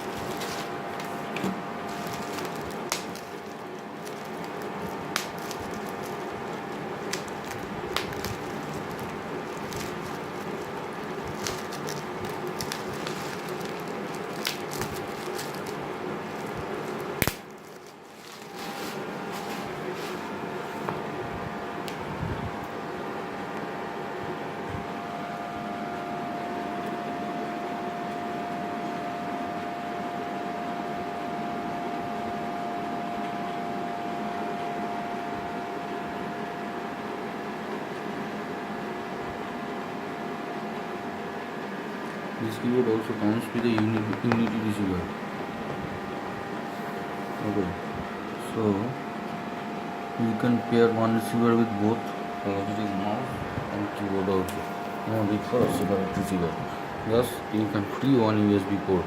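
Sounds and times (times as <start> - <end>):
steady hum: 0.0 - 59.0
handling clicks and crackles: 0.1 - 20.2
constant mid-pitched tone: 42.4 - 59.0.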